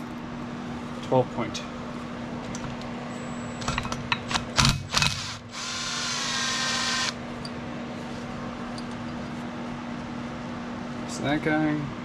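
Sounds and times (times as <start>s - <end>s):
power tool whirring: 4.6s - 7.2s.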